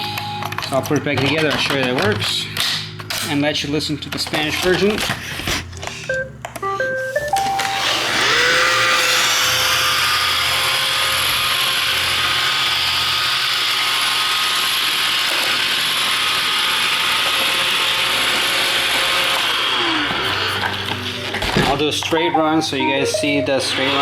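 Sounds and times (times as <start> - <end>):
robot vacuum fan whine: 5.6 - 24.0
spinning brushes whirring and rattling: 7.7 - 10.5.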